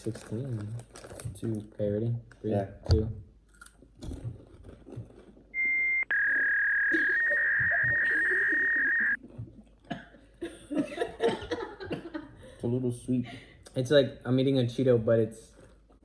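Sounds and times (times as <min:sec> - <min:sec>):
crunching and chewing snacks: 0:00.0 - 0:01.7, 0:03.4 - 0:05.5
high-pitched beep: 0:05.6 - 0:09.2.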